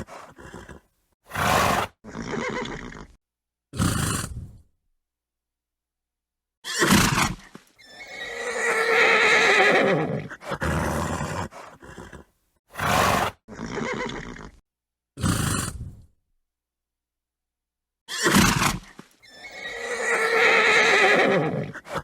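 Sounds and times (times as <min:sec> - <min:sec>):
horse snorting: 0:00.0 - 0:03.2, 0:03.8 - 0:04.6, 0:06.8 - 0:14.6, 0:15.2 - 0:16.1
horse whinnying: 0:00.1 - 0:03.2, 0:06.6 - 0:14.6, 0:18.1 - 0:22.0.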